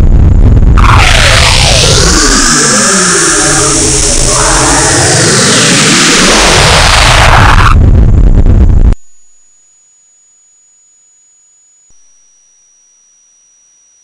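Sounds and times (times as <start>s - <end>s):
loud dense hiss and rumble: 0.0s - 9.0s.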